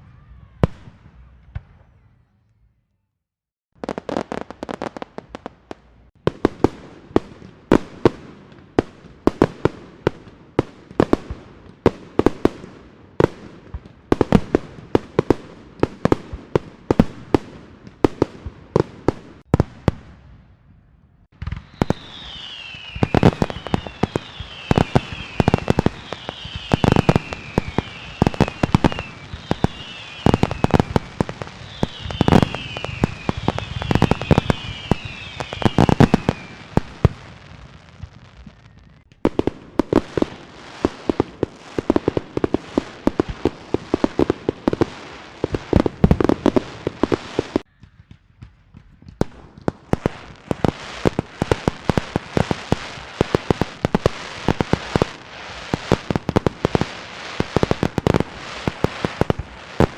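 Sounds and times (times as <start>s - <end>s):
whistling fireworks: 0.0s - 2.5s, 3.8s - 59.9s
firecrackers banging: 21.3s - 59.9s.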